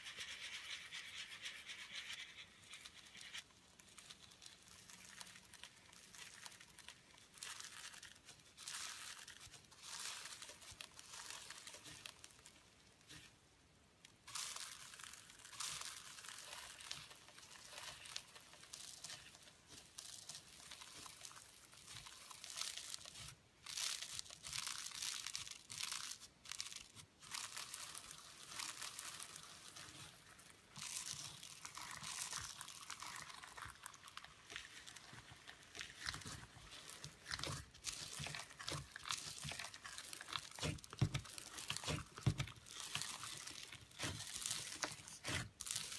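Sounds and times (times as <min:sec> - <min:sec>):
slime squeezed by hand crackling: 0:14.3 - 0:45.9.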